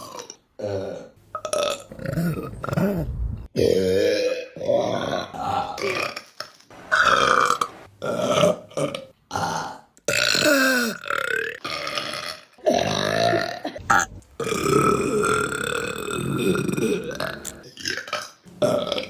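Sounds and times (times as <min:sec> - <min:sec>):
woman burping: 0:08.2 - 0:11.6, 0:12.6 - 0:19.0.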